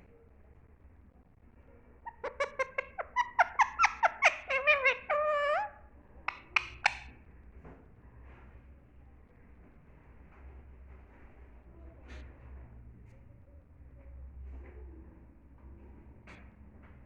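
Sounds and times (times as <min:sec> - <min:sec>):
parrot chirping: 0:02.0 - 0:07.1
parrot sharp calls: 0:02.0 - 0:07.1.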